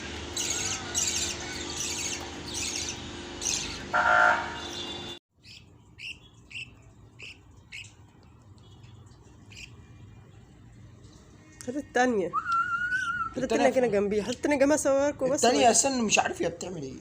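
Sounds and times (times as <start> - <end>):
pet birds chirping: 0.3 - 4.0, 4.6 - 10.5.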